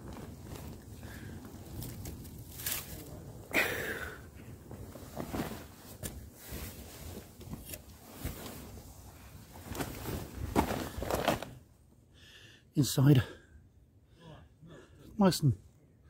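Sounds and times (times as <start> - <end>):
rustling inside a tent: 0.0 - 12.1.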